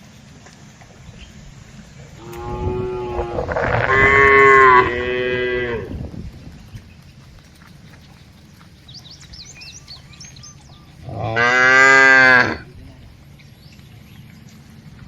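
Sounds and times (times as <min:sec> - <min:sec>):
small birds chirping: 0:00.0 - 0:03.2, 0:05.8 - 0:15.0
cow mooing: 0:02.2 - 0:06.0, 0:11.0 - 0:12.7.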